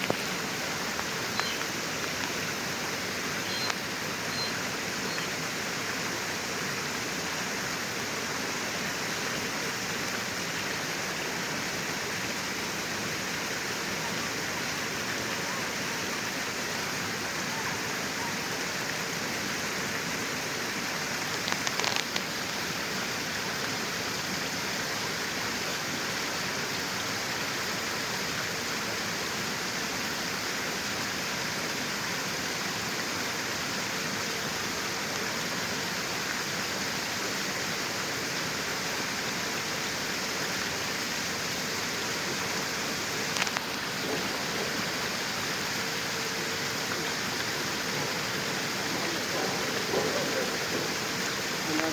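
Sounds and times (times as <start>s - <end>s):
water rushing: 0.0s - 51.9s.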